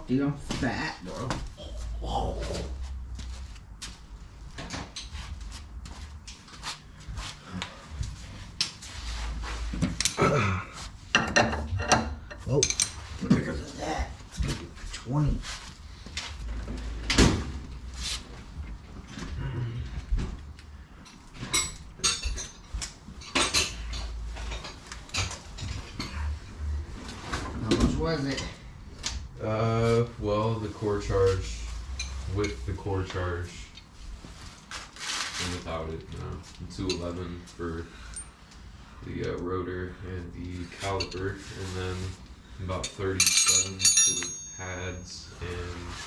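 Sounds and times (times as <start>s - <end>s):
low rumble: 1.4s - 4.6s, 25.5s - 33.8s
hand tools clicking and knocking: 11.1s - 13.0s, 43.2s - 44.8s
metal tools clinking: 11.1s - 13.4s, 21.1s - 26.4s, 31.5s - 32.7s, 42.8s - 46.0s.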